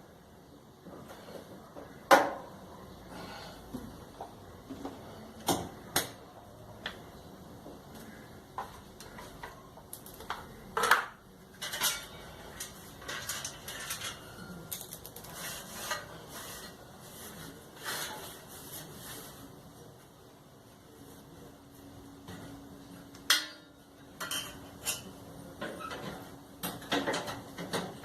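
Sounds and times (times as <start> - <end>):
metal tools clinking and clattering: 11.6 - 16.1.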